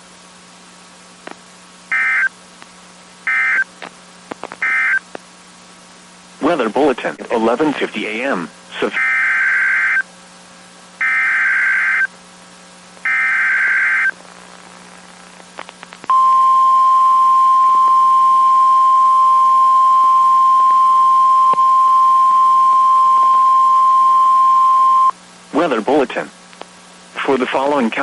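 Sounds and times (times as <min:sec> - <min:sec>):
digital data tone bursts: 0:01.9 - 0:02.3, 0:03.3 - 0:03.7, 0:04.6 - 0:05.0, 0:08.9 - 0:10.0, 0:11.0 - 0:12.1, 0:13.1 - 0:14.2, 0:19.9 - 0:25.1
steady warning alarm tone: 0:01.9 - 0:02.3, 0:03.3 - 0:03.6, 0:04.6 - 0:05.0, 0:08.9 - 0:10.0, 0:11.0 - 0:12.1, 0:13.1 - 0:14.1.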